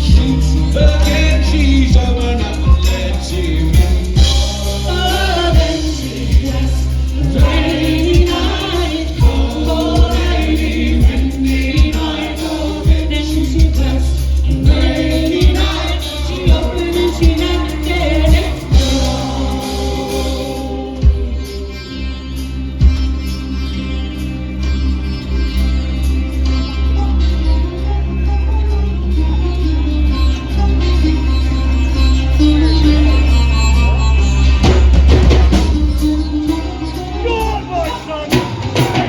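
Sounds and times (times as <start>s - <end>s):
steady drum beat: 0.0s - 21.7s, 34.6s - 39.0s
voices singing together: 0.0s - 22.4s, 32.3s - 39.0s
heavy bass: 0.0s - 39.0s.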